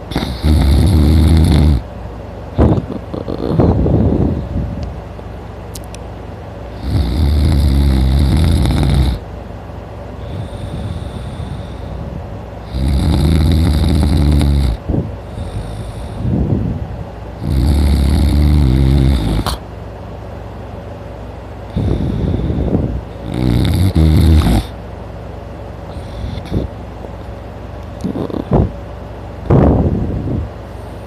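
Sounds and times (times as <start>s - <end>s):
man snoring loudly: 0.0s - 1.8s, 2.9s - 3.8s, 6.8s - 9.2s, 12.6s - 16.3s, 17.4s - 19.6s, 23.2s - 24.8s, 28.1s - 28.6s.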